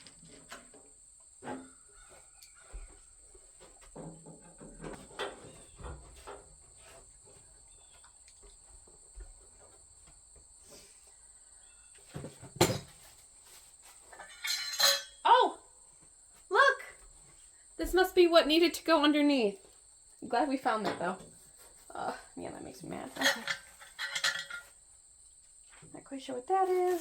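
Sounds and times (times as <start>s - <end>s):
cricket trill: 4.0s - 27.0s
short metal rattle: 14.1s - 15.2s, 23.2s - 24.8s
metal parts clicking and knocking: 23.2s - 24.7s.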